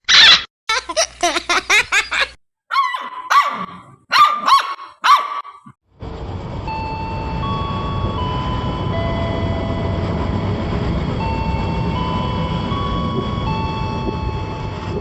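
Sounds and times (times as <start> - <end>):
puppy barking: 0.1 - 0.5, 2.7 - 5.7
running train rumble: 5.9 - 15.0
steady held tones: 6.5 - 15.0.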